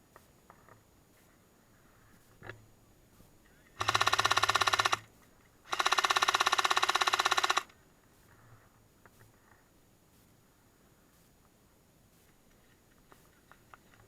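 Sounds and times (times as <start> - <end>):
airsoft gun full auto bursts: 3.8 - 5.1, 5.7 - 7.7.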